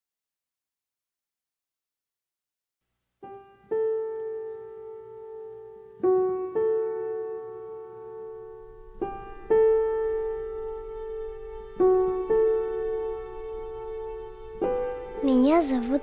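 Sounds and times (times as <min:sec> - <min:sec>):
slow solo piano: 0:03.2 - 0:16.0.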